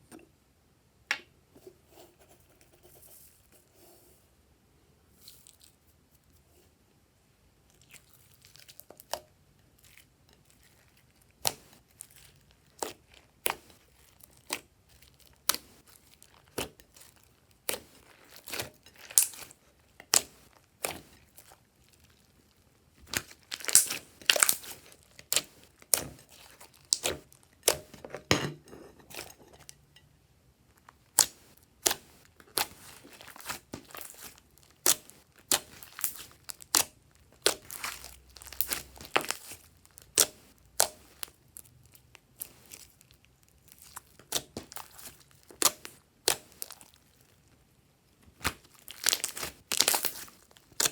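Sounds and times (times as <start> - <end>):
slime popping and crackling: 11.4 - 22.4, 23.0 - 27.9, 31.1 - 47.2, 48.4 - 50.9.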